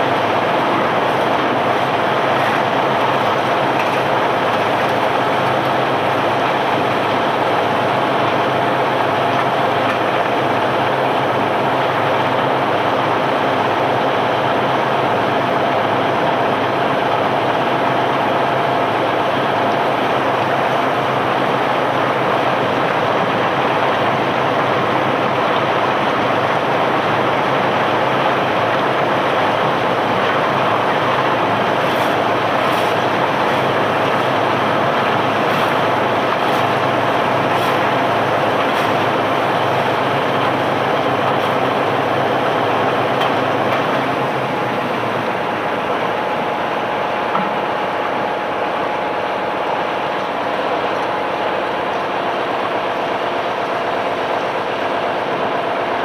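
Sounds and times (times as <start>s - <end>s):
machinery engine running: 0.0s - 12.6s, 28.4s - 49.1s.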